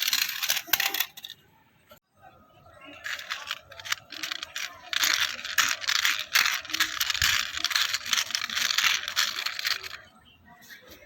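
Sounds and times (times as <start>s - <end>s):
small hard parts rattling: 0.0s - 1.4s, 2.9s - 10.1s.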